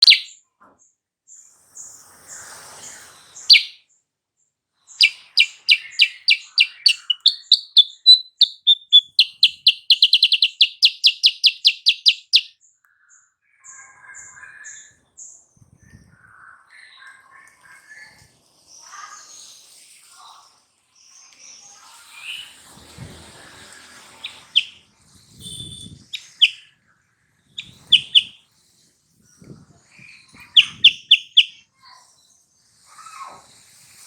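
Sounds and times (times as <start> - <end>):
soft bird chirps: 0.0 - 0.4, 1.8 - 3.8, 5.0 - 18.2, 23.7 - 26.8, 27.5 - 28.4, 29.2 - 32.0
songbird trilling: 0.0 - 0.4, 3.5 - 3.8, 5.0 - 12.5, 24.2 - 24.8, 26.1 - 26.7, 27.6 - 28.4, 30.4 - 31.6.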